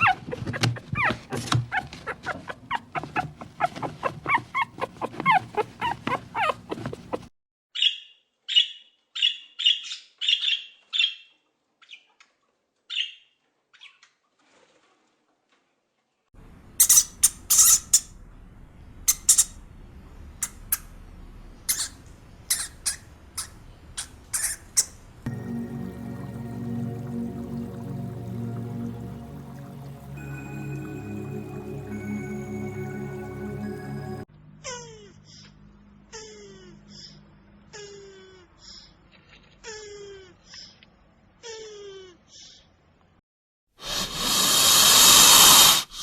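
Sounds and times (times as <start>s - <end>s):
puppy whimpering and yipping: 0.0s - 7.3s.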